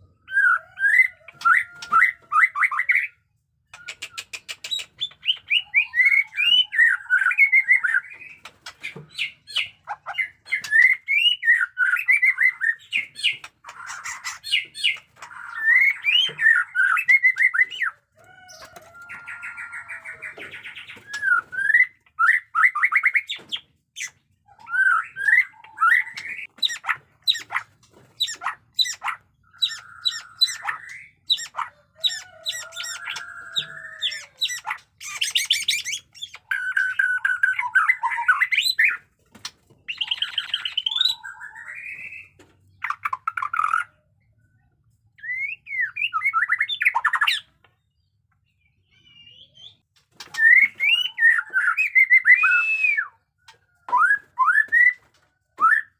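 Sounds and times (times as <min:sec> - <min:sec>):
bird harsh rasping calls: 0:00.3 - 0:39.1
bird singing whistled phrases: 0:50.4 - 0:53.2.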